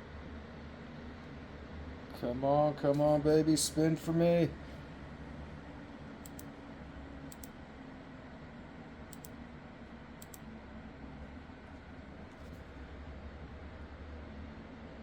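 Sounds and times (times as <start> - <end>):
computer fan hum: 0.0 - 15.0
sharp double clicks: 6.3 - 6.5.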